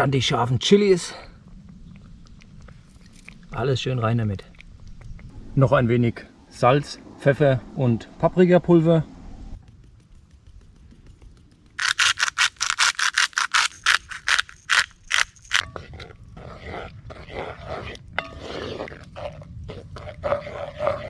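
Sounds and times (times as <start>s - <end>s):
soft irregular scraping: 11.8s - 19.3s
gritty grinding strokes: 11.8s - 21.0s.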